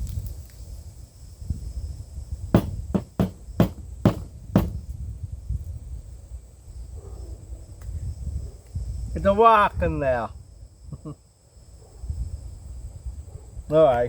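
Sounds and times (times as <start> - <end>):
container banging on hard surface: 2.6 - 4.8.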